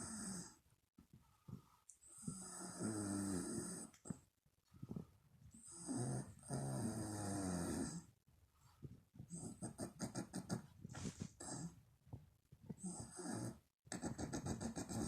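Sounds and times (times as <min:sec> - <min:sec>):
woman snoring loudly: 0:02.2 - 0:03.9, 0:05.7 - 0:08.0.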